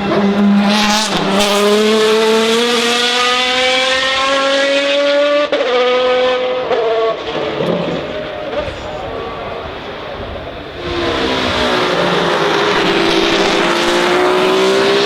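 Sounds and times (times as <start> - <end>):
racing car accelerating: 0.0 - 15.0.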